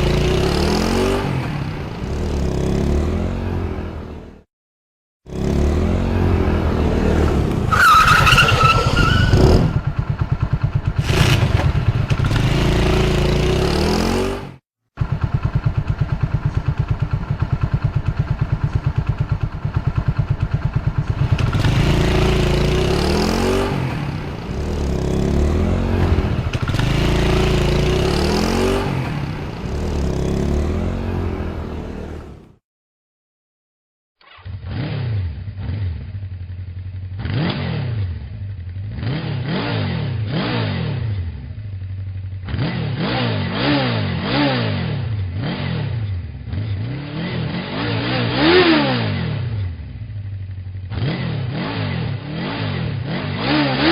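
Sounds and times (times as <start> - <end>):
motorcycle engine idling and revving: 0.0 - 4.5, 5.2 - 32.6, 34.2 - 53.9
high squeal: 7.7 - 9.6.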